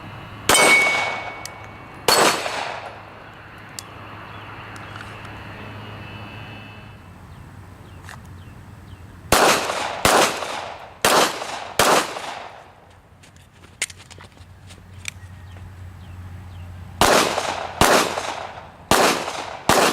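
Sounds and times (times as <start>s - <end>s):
pistol shots with echo: 0.5s - 3.0s, 9.3s - 12.7s, 17.0s - 19.9s.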